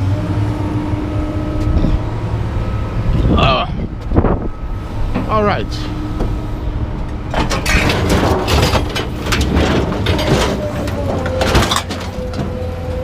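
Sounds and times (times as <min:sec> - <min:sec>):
engine running: 0:00.0 - 0:13.0
scrap metal clattering and banging: 0:07.2 - 0:13.0.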